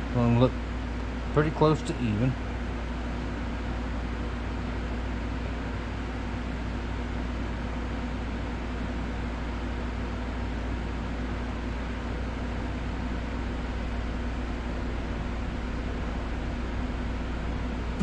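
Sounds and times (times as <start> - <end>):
machine hum and hiss: 0.0 - 18.0
constant low drone: 13.6 - 18.0.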